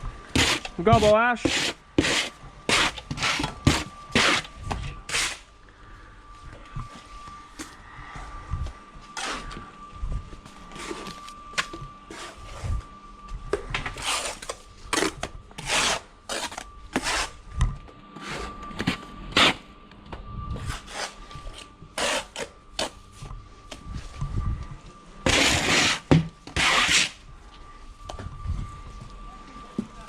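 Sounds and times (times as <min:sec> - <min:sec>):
trowel scraping mortar: 0:00.4 - 0:04.5, 0:05.1 - 0:05.4, 0:14.0 - 0:17.4, 0:22.0 - 0:23.0, 0:25.3 - 0:27.2.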